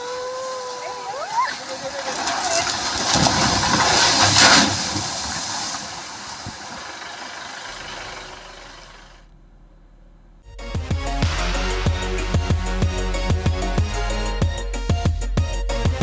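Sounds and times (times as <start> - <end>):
music: 10.4 - 16.0.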